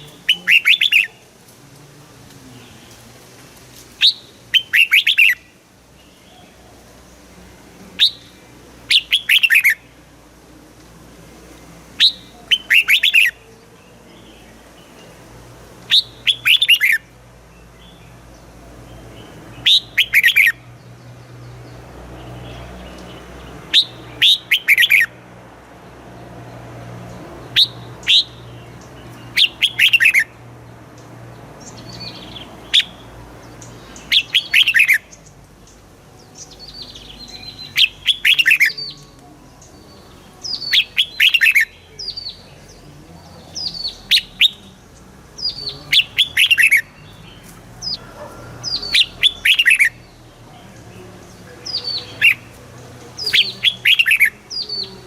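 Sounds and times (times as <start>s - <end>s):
bird singing whistled notes: 0.0s - 1.2s, 4.0s - 6.6s, 8.0s - 10.0s, 12.0s - 15.1s, 15.9s - 18.2s, 19.2s - 21.8s, 22.4s - 25.2s, 27.5s - 30.4s, 31.7s - 50.4s, 51.2s - 55.0s.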